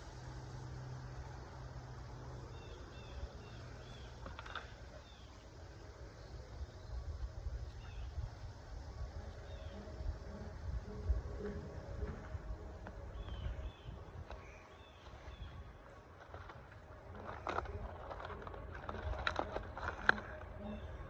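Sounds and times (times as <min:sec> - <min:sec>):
low steady rumble: 0:00.0 - 0:21.0.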